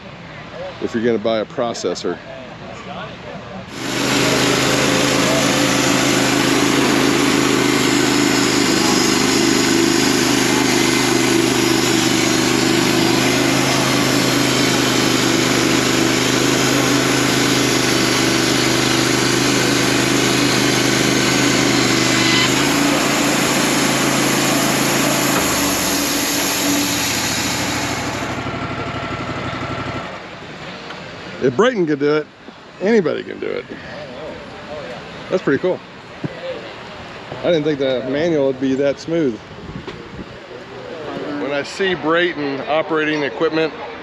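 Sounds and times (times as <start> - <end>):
loud equipment engine running: 3.6 - 31.4.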